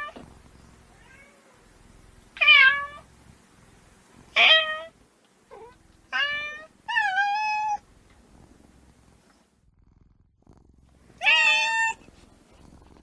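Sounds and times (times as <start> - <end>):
kitten meowing: 11.2 - 12.0.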